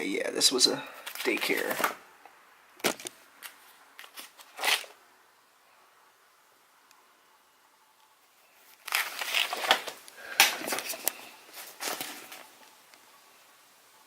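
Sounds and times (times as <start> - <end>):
rustling and crunching dry material: 8.4 - 12.8.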